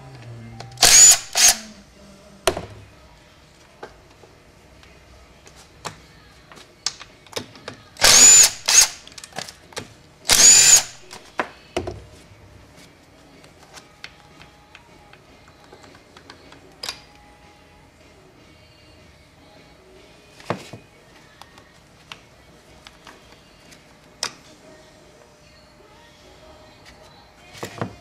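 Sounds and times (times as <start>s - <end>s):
cordless power tool whining: 10.3s - 11.0s.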